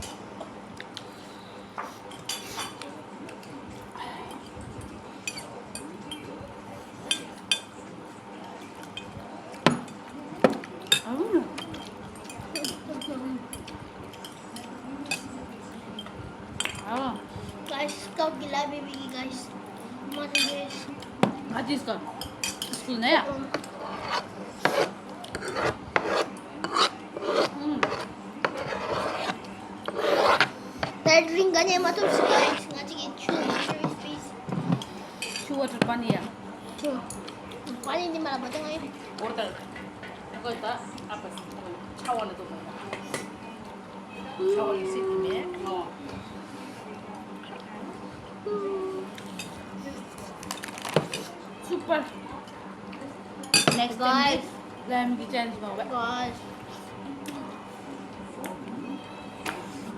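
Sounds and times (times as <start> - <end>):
metal cutlery clinking on plates: 20.3 - 21.0
crunching and chewing: 50.2 - 51.3.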